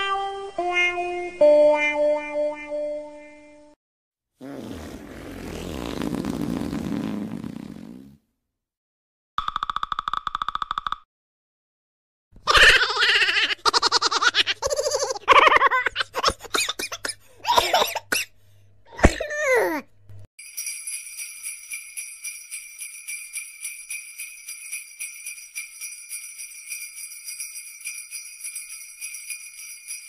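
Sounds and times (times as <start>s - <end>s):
cartoon voice sound effects: 19.0s - 19.8s
jingle bells shaking: 20.4s - 30.0s.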